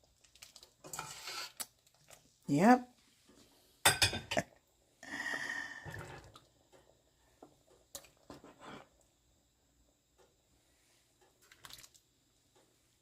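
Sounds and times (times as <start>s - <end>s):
liquid pouring: 11.4s - 12.0s.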